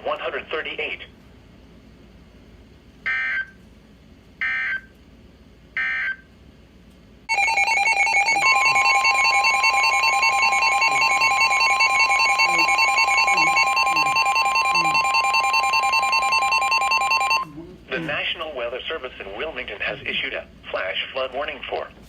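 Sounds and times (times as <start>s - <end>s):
warbling digital data tones: 7.3s - 17.5s
continuous two-tone alert signal: 7.3s - 17.6s.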